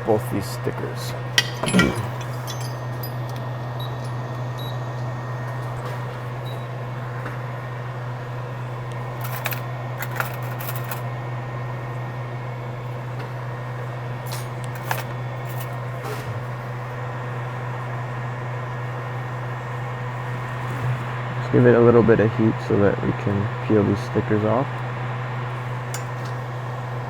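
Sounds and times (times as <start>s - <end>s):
low equipment hum: 0.0s - 27.0s.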